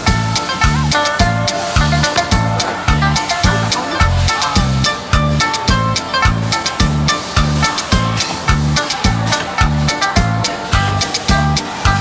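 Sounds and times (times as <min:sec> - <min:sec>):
upbeat background music: 0:00.0 - 0:12.0.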